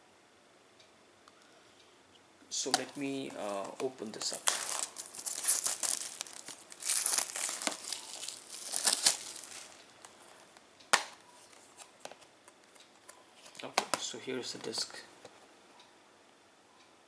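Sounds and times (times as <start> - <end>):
packaging crinkling and rustling: 2.6 - 14.0.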